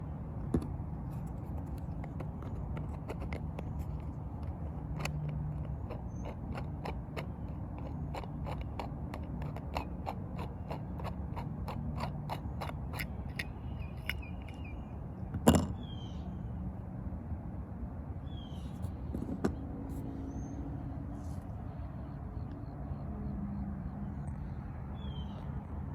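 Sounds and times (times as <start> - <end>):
plastic clicks and scrapes: 0.5 - 14.7.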